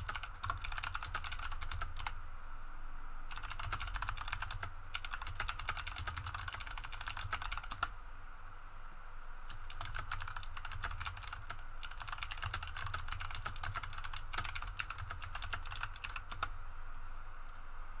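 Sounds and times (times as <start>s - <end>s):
mechanical keyboard typing: 0.0s - 2.2s, 3.3s - 7.9s, 9.5s - 16.5s.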